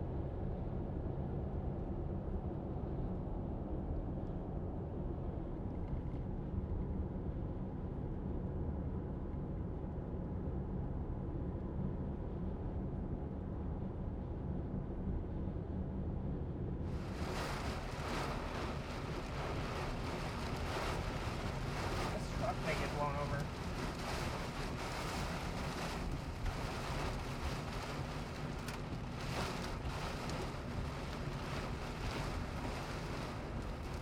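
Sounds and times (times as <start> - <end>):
wind low rumble: 0.0 - 34.0
wind gust buffeting microphone: 16.9 - 34.0.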